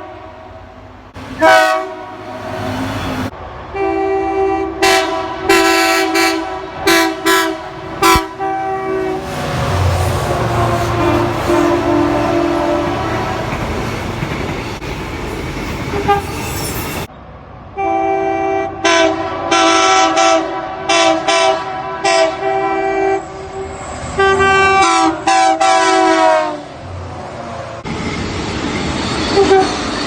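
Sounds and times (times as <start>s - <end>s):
train chord horn blasts: 0.0s - 13.6s, 15.9s - 16.4s, 17.8s - 26.8s
passing train rail noise: 0.0s - 30.0s.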